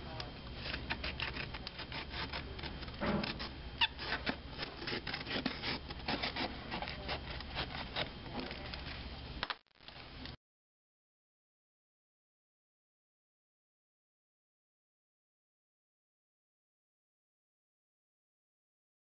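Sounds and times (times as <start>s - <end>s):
paper and book board scraping: 0.6s - 8.7s.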